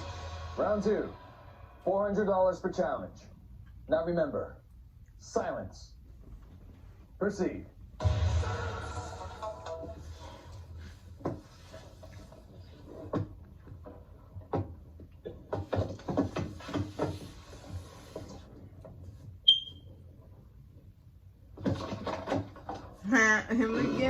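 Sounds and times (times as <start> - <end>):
short high beep: 19.5 - 19.8.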